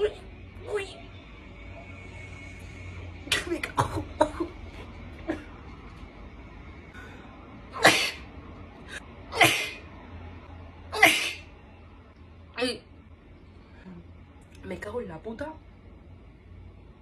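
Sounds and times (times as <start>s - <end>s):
person sneezing: 7.8s - 8.2s, 9.3s - 9.8s.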